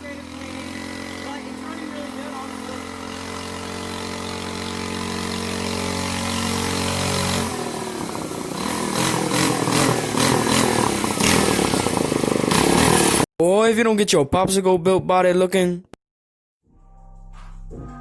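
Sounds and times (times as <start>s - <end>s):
small engine idling and revving: 0.0s - 13.3s.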